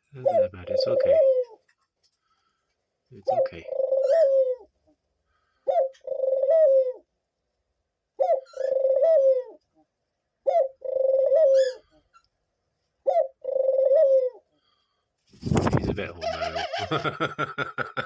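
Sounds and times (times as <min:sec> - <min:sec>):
dove cooing: 0:00.1 - 0:01.6, 0:03.2 - 0:04.8, 0:05.5 - 0:07.1, 0:08.2 - 0:09.8, 0:10.4 - 0:12.0, 0:13.0 - 0:14.5.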